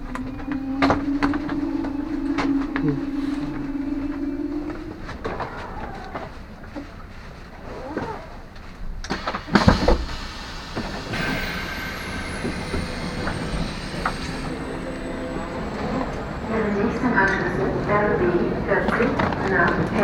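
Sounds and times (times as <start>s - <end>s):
high brake squeal: 0.0s - 6.4s, 9.2s - 17.5s
train braking: 0.0s - 20.0s.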